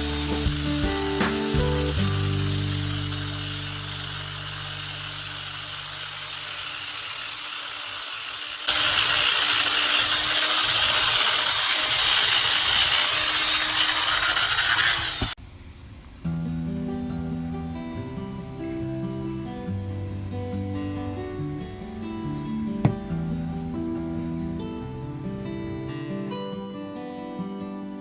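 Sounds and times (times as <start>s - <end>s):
sanding wheel on wood: 0.0s - 15.4s.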